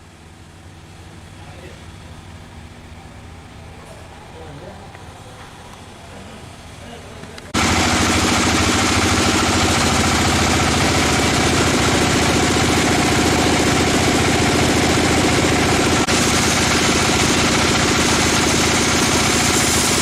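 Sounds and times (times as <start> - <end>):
engine running steadily: 0.0 - 20.0.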